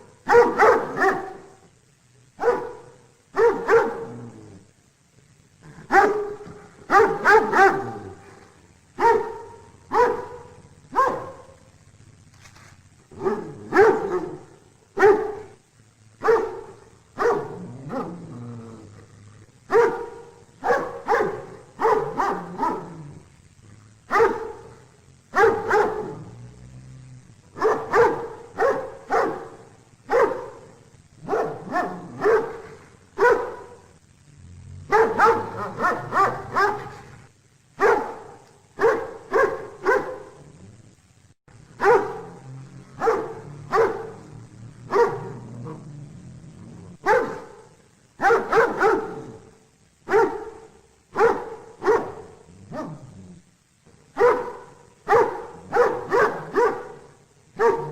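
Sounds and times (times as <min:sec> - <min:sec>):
dog barking: 0:00.0 - 0:01.6, 0:02.4 - 0:04.3, 0:05.7 - 0:08.3, 0:09.0 - 0:11.7, 0:13.1 - 0:15.6, 0:16.2 - 0:18.2, 0:19.7 - 0:23.2, 0:24.1 - 0:26.3, 0:27.5 - 0:33.9, 0:34.9 - 0:37.1, 0:37.8 - 0:40.5, 0:41.7 - 0:45.8, 0:47.0 - 0:53.2, 0:54.1 - 0:57.9.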